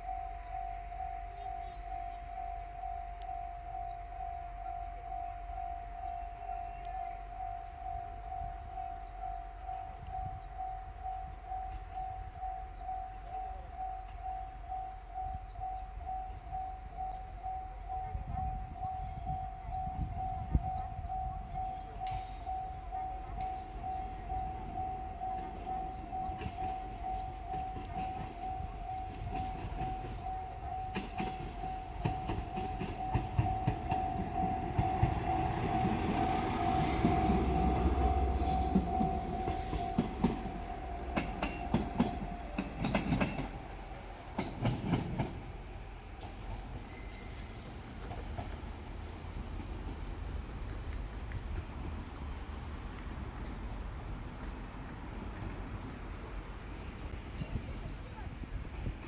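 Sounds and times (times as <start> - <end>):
train rumble: 0.0 - 59.0
level crossing bell ringing: 18.9 - 43.6
wheels clicking over rail joints: 20.9 - 59.0.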